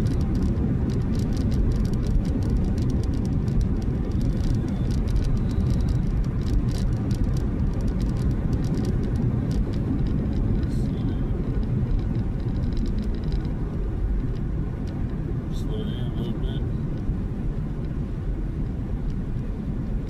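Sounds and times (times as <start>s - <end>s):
light ticks: 0.0s - 15.2s
car driving on wet road: 0.0s - 20.0s.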